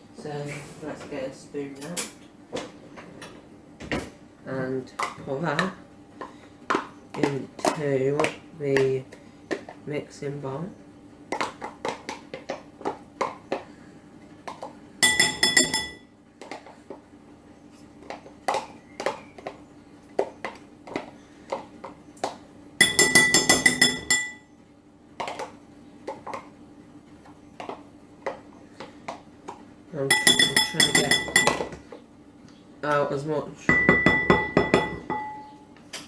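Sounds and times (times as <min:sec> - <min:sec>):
rapid tapping on bowl: 0:15.0 - 0:16.0, 0:22.8 - 0:24.4, 0:30.1 - 0:31.8, 0:33.7 - 0:35.5.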